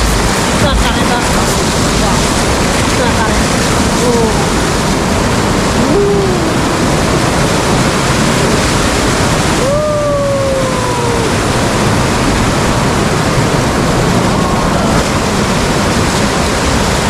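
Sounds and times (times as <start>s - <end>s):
water rushing down spillway: 0.0s - 17.0s.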